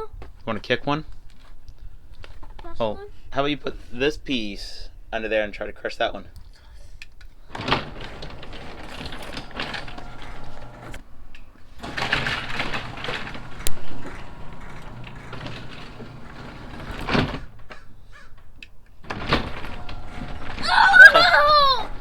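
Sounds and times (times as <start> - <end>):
garage door rattling and creaking: 7.4 - 22.0
garage door opener running: 7.5 - 22.0.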